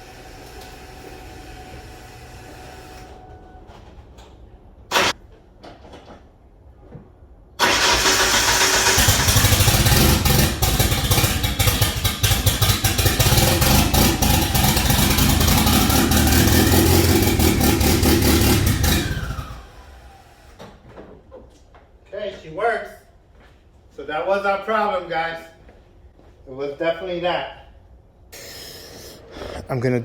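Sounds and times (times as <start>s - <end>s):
car engine starting and running: 7.6s - 20.6s.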